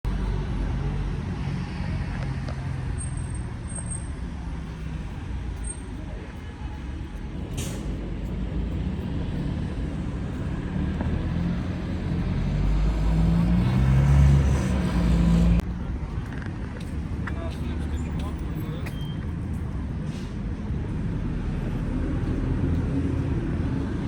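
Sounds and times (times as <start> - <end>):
vehicle engine rumble: 0.0 - 24.0.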